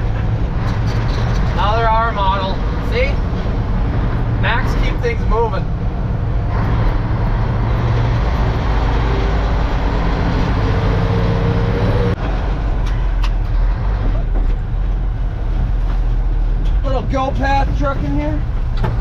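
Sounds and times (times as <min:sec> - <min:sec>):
truck diesel engine drone: 0:00.0 - 0:19.0.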